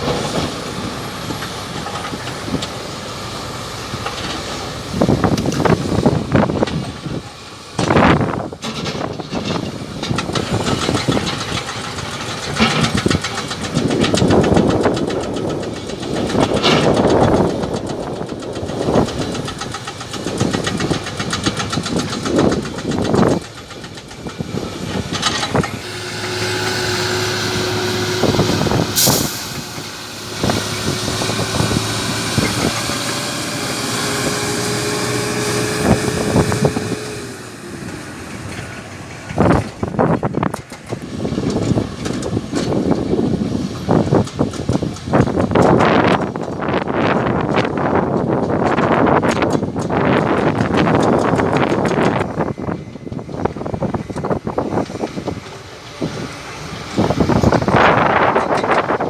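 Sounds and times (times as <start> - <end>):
engine whine: 0.0 - 46.6, 49.2 - 59.0
excavator diesel engine: 0.0 - 59.0
clanks and crunches of rock: 4.0 - 25.8.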